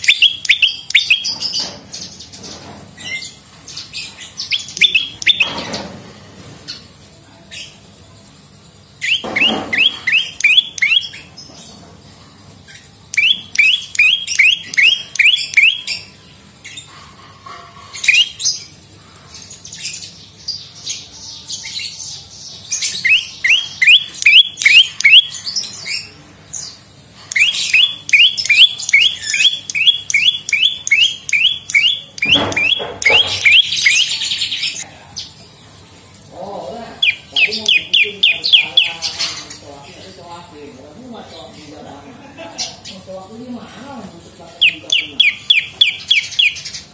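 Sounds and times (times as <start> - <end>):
songbird singing: 0.0 - 6.0, 6.6 - 11.9, 12.6 - 43.4, 44.2 - 46.9
scratchy bird chattering: 3.1 - 5.6, 9.0 - 11.3, 13.1 - 16.0, 16.7 - 18.6, 23.0 - 26.1, 27.2 - 34.8, 37.0 - 39.6, 44.6 - 46.9.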